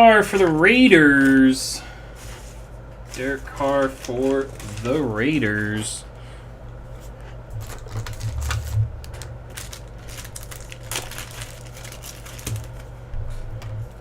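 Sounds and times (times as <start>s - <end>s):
steady low hum: 0.0s - 14.0s
trading cards clicking and rustling: 2.4s - 6.0s, 7.6s - 12.9s.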